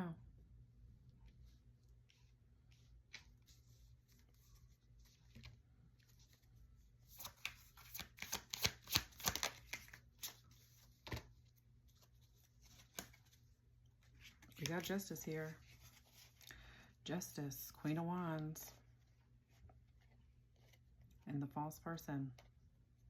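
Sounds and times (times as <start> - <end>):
cards being shuffled: 7.1 - 13.4, 14.0 - 16.6.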